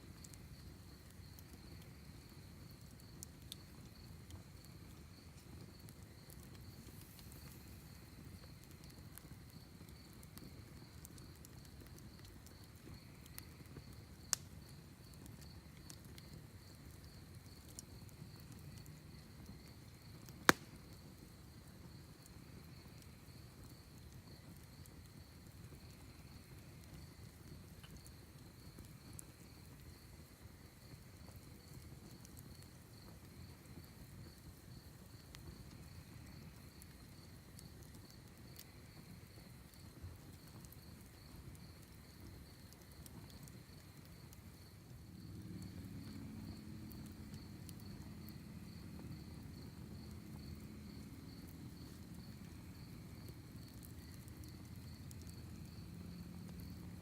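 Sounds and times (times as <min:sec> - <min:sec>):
wood fire crackling: 0:00.0 - 0:57.0
crickets chirping: 0:00.2 - 0:57.0.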